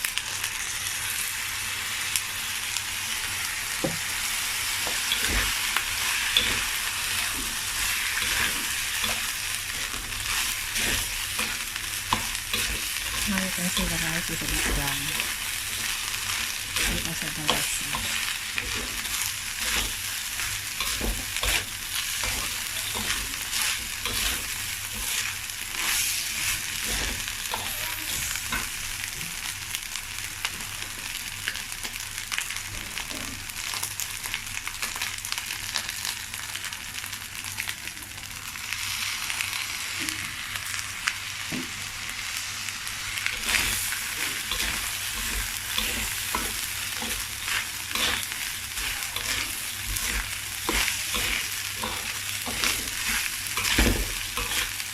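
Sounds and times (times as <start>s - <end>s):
rice sizzling in a pan: 0.0s - 54.9s
spatula scraping a pan: 43.3s - 54.8s.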